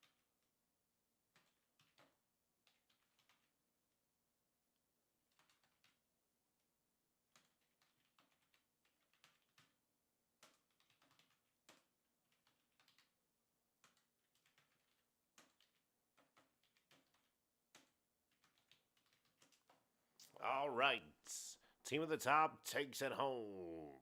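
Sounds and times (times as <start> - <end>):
typing on keyboard: 0.0 - 0.4, 1.3 - 3.6, 5.2 - 6.1, 7.2 - 19.9.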